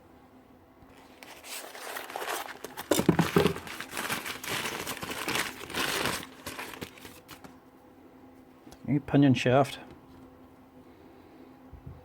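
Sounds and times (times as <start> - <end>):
plastic packaging crinkling: 0.9 - 7.6
plastic tearing: 0.9 - 7.6.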